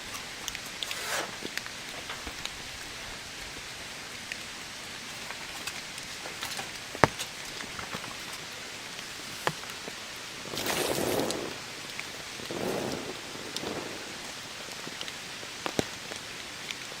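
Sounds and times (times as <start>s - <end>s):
rustling: 0.0s - 16.8s
steady rain falling: 0.0s - 17.0s
heavy drops tapping: 5.1s - 10.0s.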